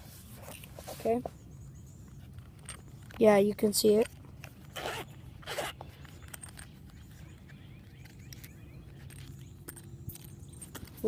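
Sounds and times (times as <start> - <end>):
short rustles: 0.0 - 1.4.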